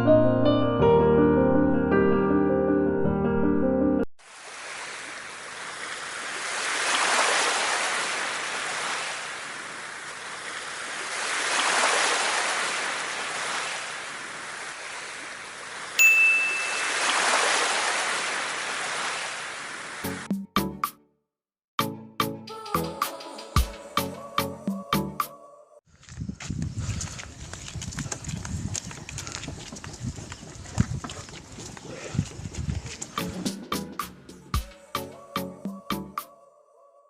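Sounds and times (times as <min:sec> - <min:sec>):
sea waves washing: 0:04.2 - 0:20.2
high ding: 0:16.0 - 0:17.3.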